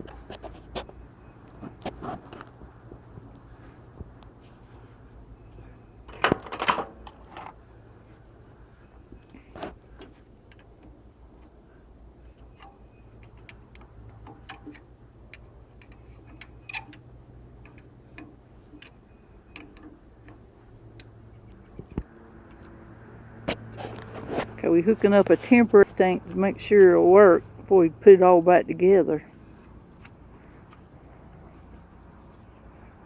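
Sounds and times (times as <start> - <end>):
low steady hum: 0.0 - 33.0
metal tools clinking: 6.1 - 7.6.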